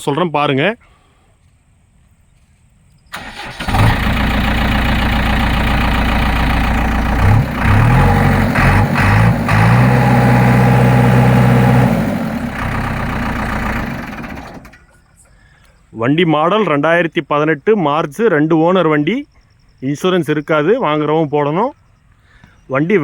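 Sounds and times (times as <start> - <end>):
diesel engine cranking and starting: 3.1 - 15.0
diesel engine idling and revving: 3.2 - 14.8.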